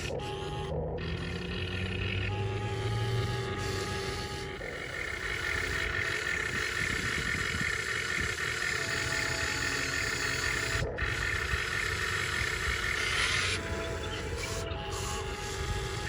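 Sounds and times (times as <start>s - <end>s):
electric hydraulic pump whining: 1.0s - 16.0s.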